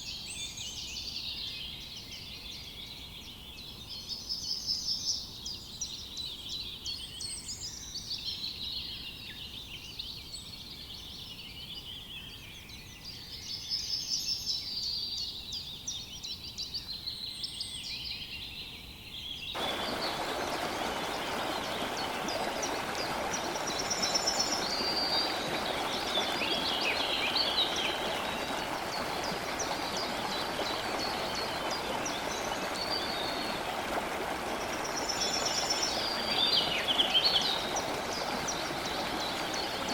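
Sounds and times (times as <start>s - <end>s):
songbirds singing: 0.0s - 39.9s
steady rushing noise: 19.6s - 39.9s.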